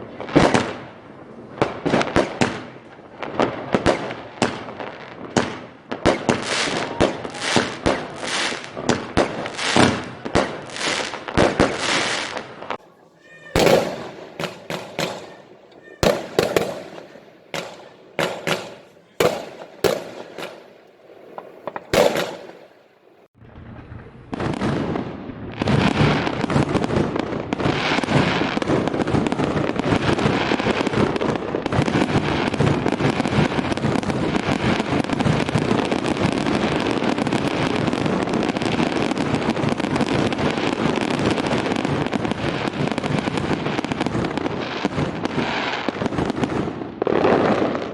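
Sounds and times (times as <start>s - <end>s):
firecrackers crackling: 0.0s - 23.4s, 24.2s - 47.9s
fireworks sharp bangs: 0.0s - 23.4s, 24.3s - 47.9s.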